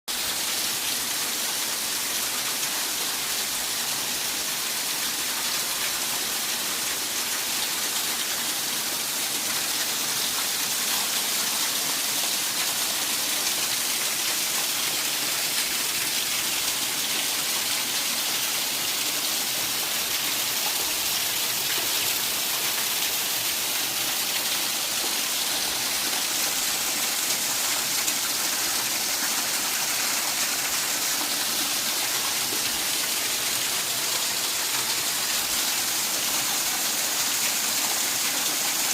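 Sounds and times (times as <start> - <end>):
water rushing: 10.4 - 38.9.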